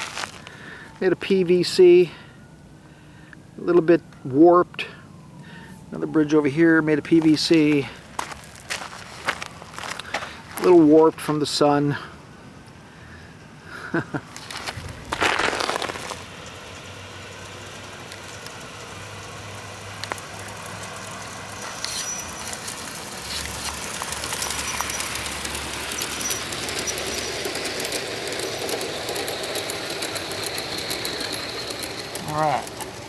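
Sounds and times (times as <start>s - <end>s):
model train motor rattle and hum: 14.3s - 33.0s.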